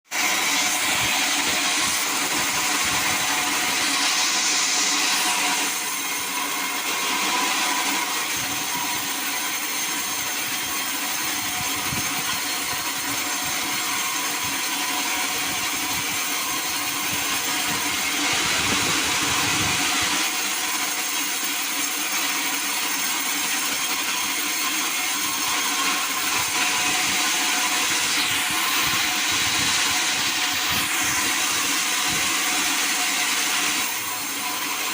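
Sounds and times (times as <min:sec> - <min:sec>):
sawmill saw cutting wood: 0:00.1 - 0:34.9.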